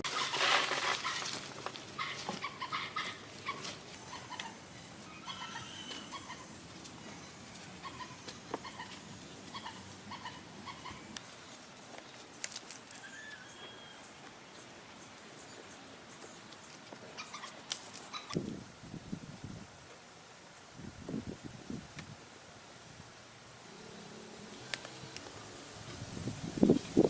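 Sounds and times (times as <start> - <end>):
high-pitched animal calls: 2.0 - 11.2, 12.9 - 14.2, 17.2 - 18.4.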